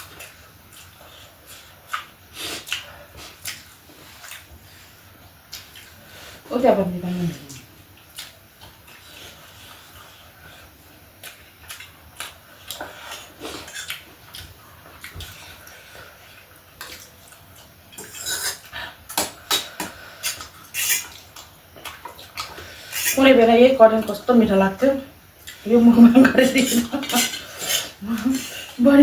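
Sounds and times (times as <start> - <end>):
wet chewing and slurping: 0.0 - 6.0, 8.0 - 23.2.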